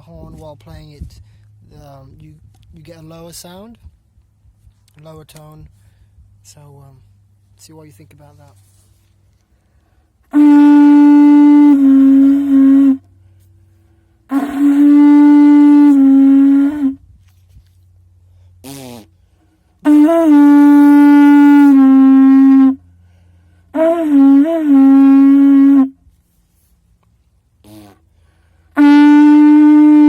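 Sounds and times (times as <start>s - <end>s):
muted horn blasts: 10.2s - 17.1s, 19.8s - 26.0s, 28.7s - 30.0s.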